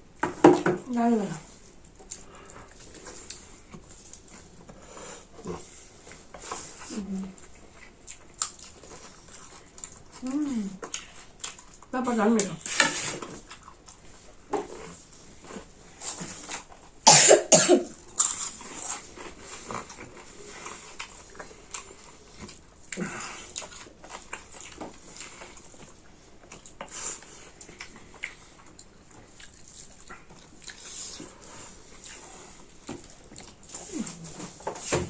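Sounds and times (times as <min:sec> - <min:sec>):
loud cough: 0:17.1 - 0:17.9
people eating mouth sounds: 0:17.9 - 0:35.0.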